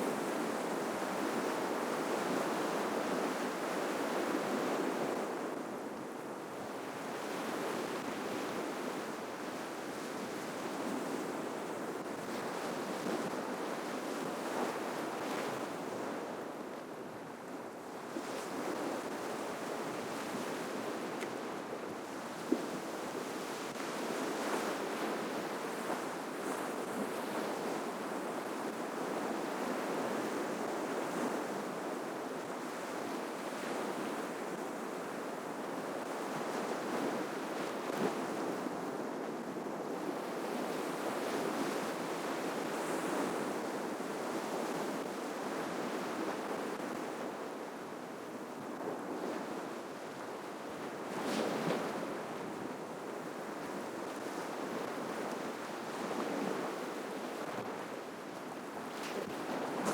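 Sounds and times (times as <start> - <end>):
ocean waves breaking: 58.9 - 59.9.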